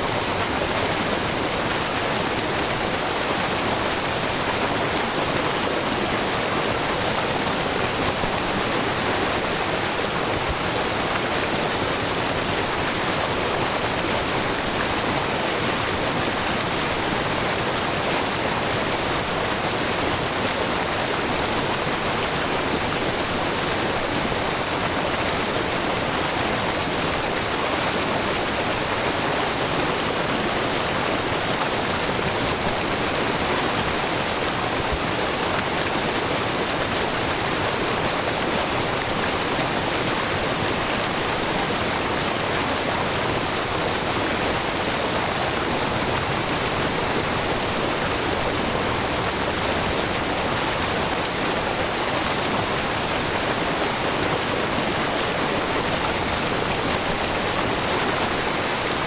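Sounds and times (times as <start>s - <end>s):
waterfall rushing and splashing: 0.0s - 59.0s.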